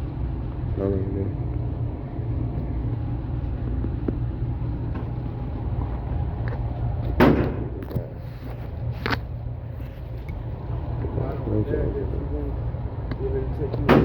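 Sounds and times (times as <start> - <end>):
steady low rumble: 0.0 - 14.0
gunshot: 7.2 - 7.8.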